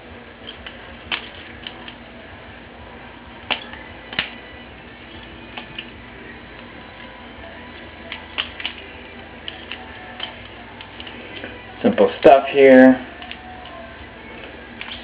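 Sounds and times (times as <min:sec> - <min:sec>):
butterfly knife clicking: 0:07.8 - 0:11.5.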